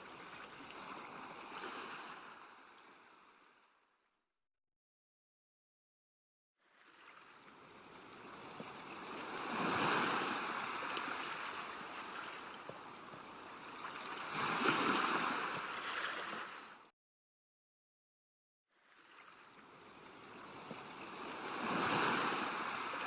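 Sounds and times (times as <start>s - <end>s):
ocean waves breaking: 0.0s - 3.5s, 6.8s - 16.9s, 18.9s - 23.0s.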